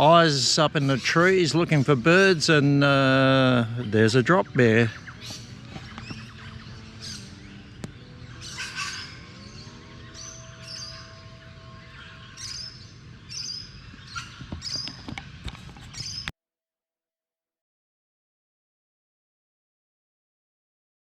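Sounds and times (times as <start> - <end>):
birds chirping: 0.0 - 16.3.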